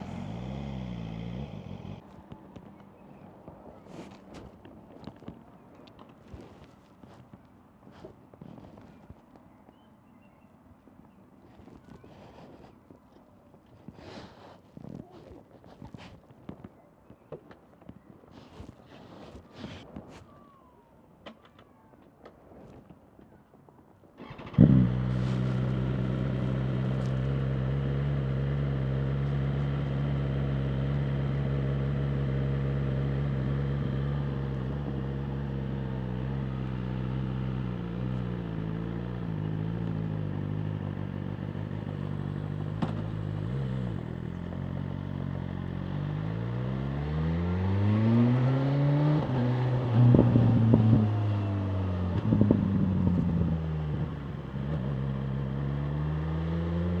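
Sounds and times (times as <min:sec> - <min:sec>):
engine revs climbing: 0:00.0 - 0:02.0, 0:24.2 - 0:57.0
motorcycle engine idling: 0:00.0 - 0:02.0, 0:24.2 - 0:46.0
motorcycle engine starting: 0:00.0 - 0:02.0, 0:24.2 - 0:57.0.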